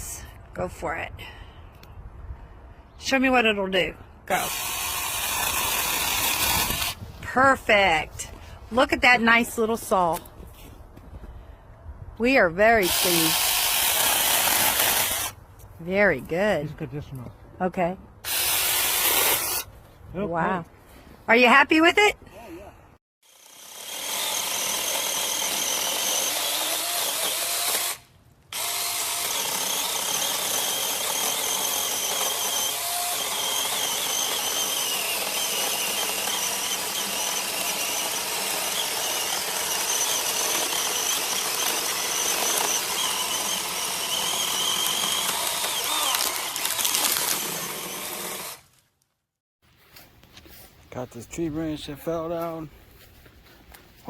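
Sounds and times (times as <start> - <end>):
mini chainsaw whining: 4.3 - 7.0, 12.8 - 15.3, 18.3 - 19.6, 23.2 - 48.6.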